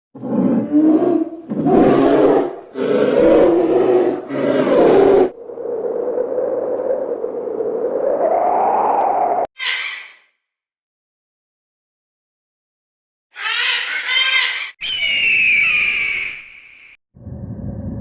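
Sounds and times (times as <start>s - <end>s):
large animal roaring: 0.2s - 5.4s.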